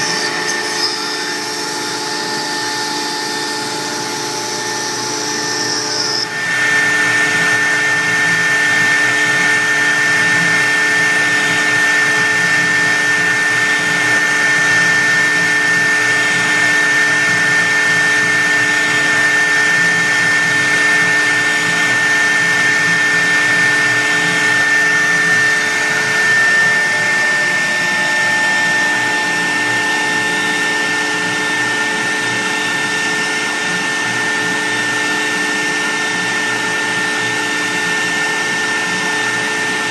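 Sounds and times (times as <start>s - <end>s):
router spindle whine: 0.0s - 39.9s.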